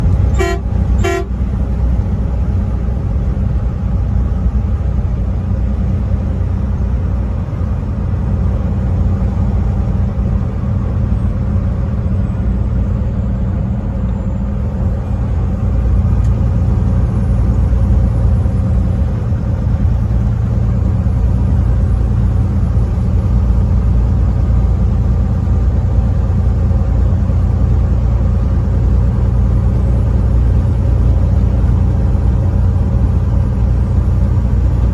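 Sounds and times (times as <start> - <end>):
truck engine and road rumble: 0.0 - 34.9
truck horn toot: 0.3 - 1.5.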